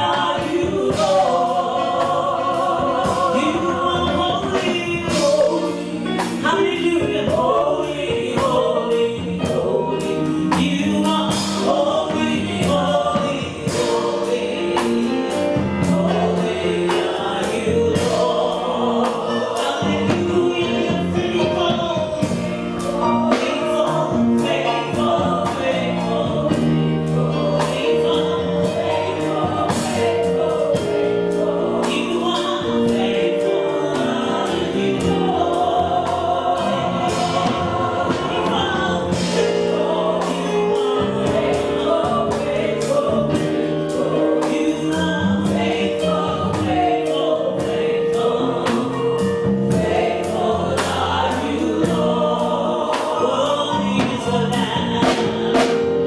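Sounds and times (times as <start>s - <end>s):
band playing a steady beat: 0.0s - 56.0s
choir singing long held notes: 0.0s - 56.0s.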